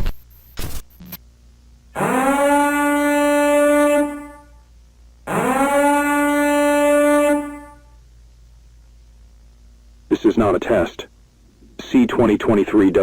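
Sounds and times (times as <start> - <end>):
long horn blasts: 2.0 - 4.6, 5.3 - 7.9.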